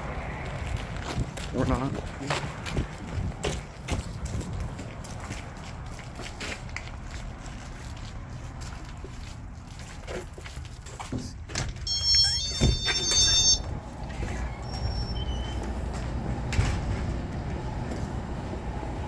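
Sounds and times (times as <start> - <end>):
car engine rumble: 8.2 - 19.0
high-pitched squeal: 11.9 - 15.7.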